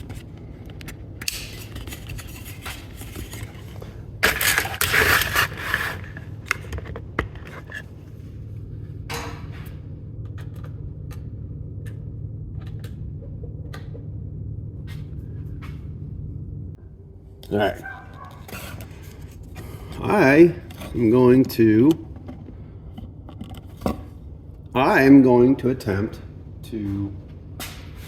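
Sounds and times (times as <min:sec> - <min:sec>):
clattering: 0:00.0 - 0:08.0
steady low hum: 0:00.0 - 0:28.0.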